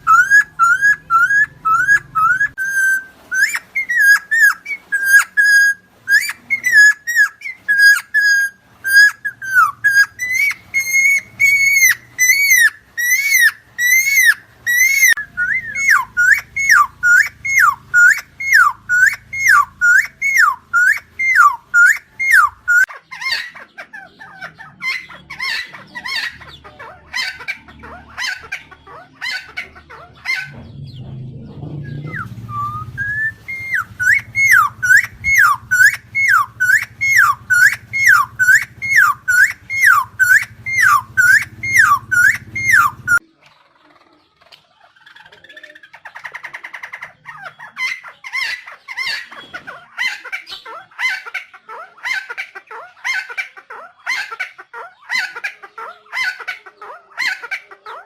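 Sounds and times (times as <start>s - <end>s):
bird calling repeated notes: 0.0s - 26.5s, 31.8s - 43.2s.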